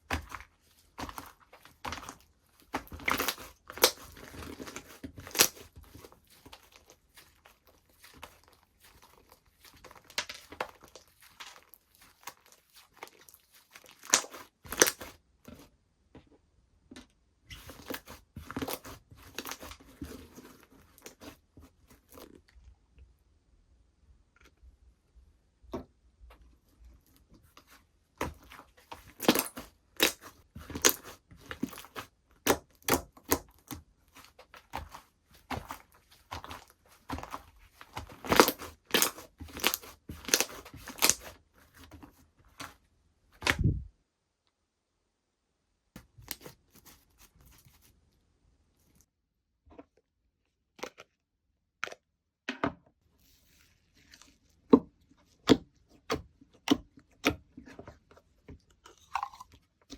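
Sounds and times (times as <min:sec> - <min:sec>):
slime squished with crackly pops: 0:00.0 - 0:15.2, 0:27.6 - 0:42.8.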